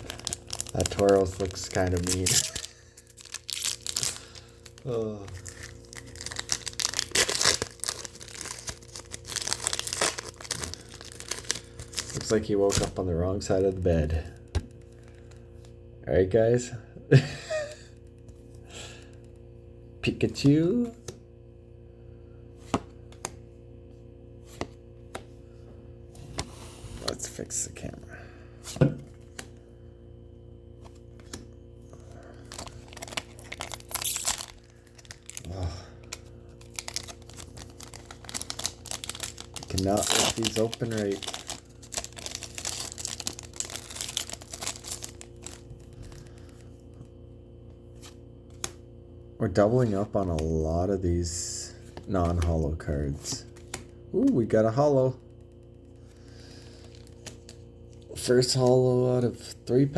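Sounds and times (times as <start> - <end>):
foil wrapper crinkling and tearing: 0.0 - 13.0, 32.3 - 46.6
faint steady hum: 0.0 - 59.9.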